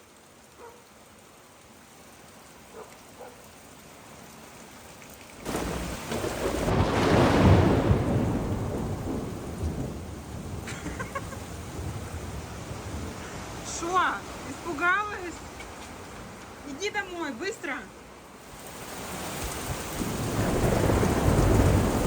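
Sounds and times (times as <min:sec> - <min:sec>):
faint rain hiss: 0:00.0 - 0:22.0
thunder crack and rumble: 0:05.5 - 0:13.1, 0:20.0 - 0:22.0.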